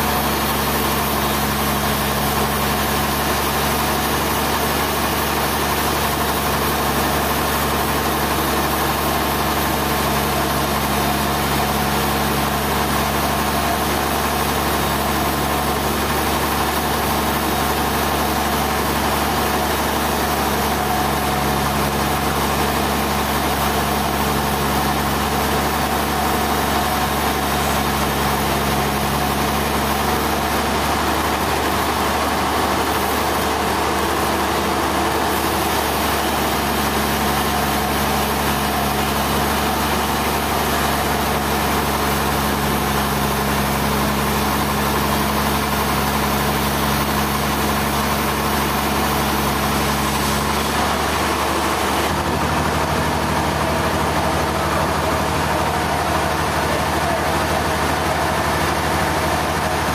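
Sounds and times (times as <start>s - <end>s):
sawmill machinery droning: 0.0s - 59.9s.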